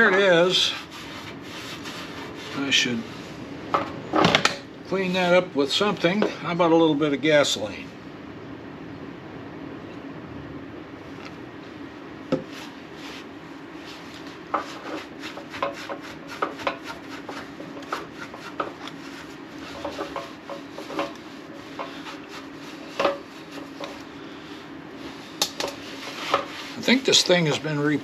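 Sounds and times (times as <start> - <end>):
scraping and rubbing metal: 0.0 - 2.9, 12.5 - 24.1, 25.0 - 27.8.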